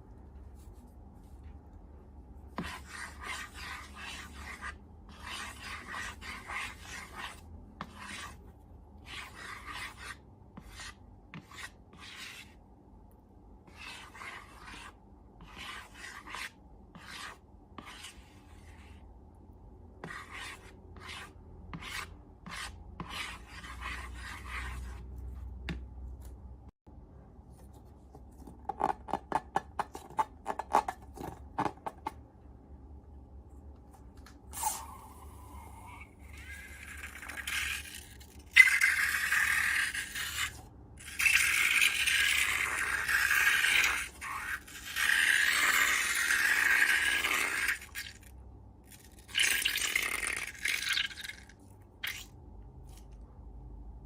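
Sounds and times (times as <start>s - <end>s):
rubbing or scraping strokes: 2.5s - 12.6s, 13.7s - 19.1s.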